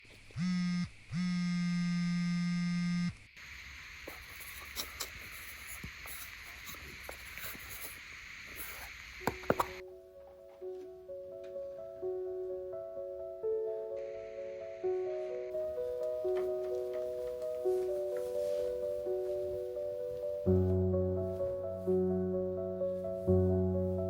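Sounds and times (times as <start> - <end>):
electric buzzer: 0.4 - 3.9
hiss with light clicks: 3.6 - 9.8
soft music: 9.3 - 24.0.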